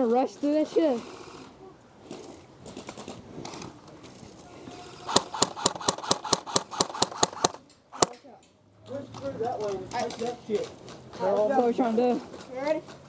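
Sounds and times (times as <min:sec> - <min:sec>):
airsoft gun firing: 0:05.1 - 0:08.2.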